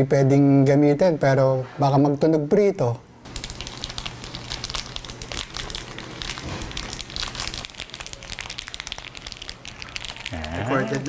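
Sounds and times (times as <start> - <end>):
tea containers crinkling: 3.3 - 11.0.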